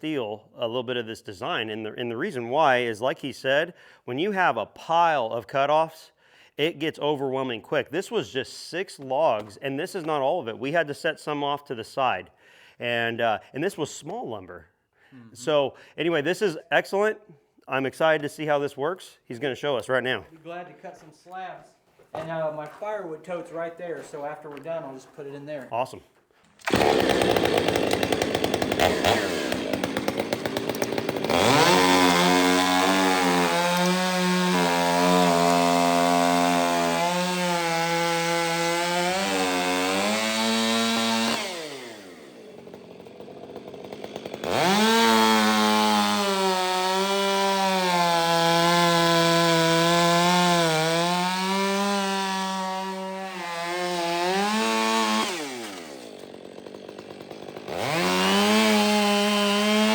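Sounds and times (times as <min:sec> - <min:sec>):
chainsaw cutting wood: 0:26.5 - 0:59.9
chainsaw idling: 0:26.6 - 0:59.9.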